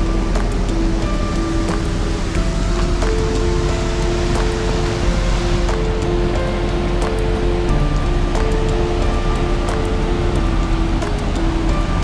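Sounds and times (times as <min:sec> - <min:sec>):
slow melody of held notes: 0:00.0 - 0:12.0
steady rushing noise: 0:00.0 - 0:12.0.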